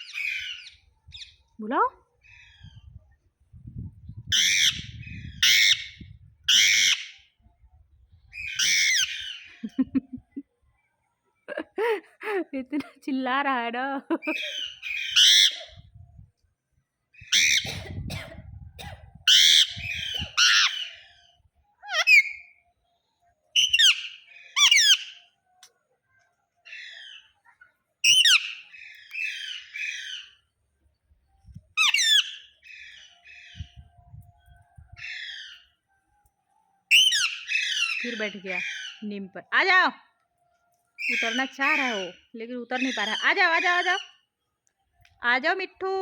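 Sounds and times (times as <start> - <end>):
parrot squawking: 4.3 - 7.2, 8.4 - 9.5, 14.2 - 15.8, 17.3 - 17.8, 19.3 - 21.0, 21.8 - 22.4, 23.6 - 25.2, 28.0 - 28.6, 31.8 - 33.1, 36.9 - 39.0.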